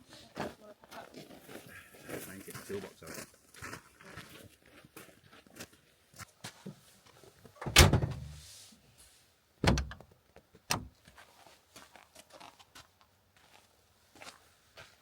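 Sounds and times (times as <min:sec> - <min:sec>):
vehicle doors slamming: 0:07.6 - 0:08.4, 0:09.6 - 0:10.0.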